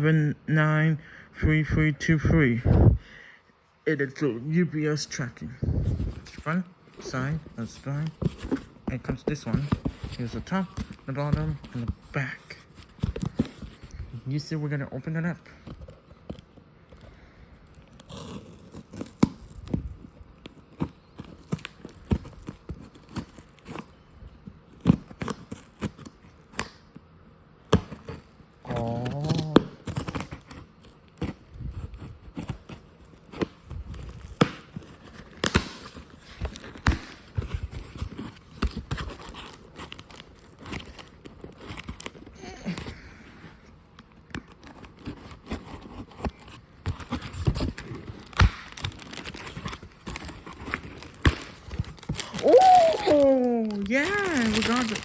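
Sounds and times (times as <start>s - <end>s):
cardboard box tearing and crinkling: 17.9s - 19.8s, 27.8s - 31.5s, 32.3s - 42.4s, 44.5s - 55.0s.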